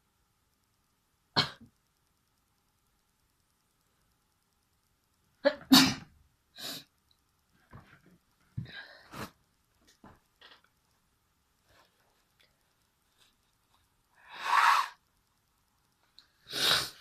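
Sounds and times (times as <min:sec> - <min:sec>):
person sneezing: 0:05.5 - 0:06.8.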